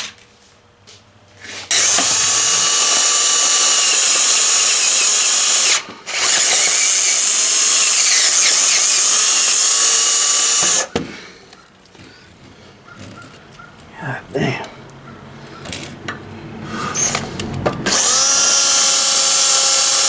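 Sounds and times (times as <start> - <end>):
electric drill boring into metal: 1.7 - 11.0, 15.6 - 20.0.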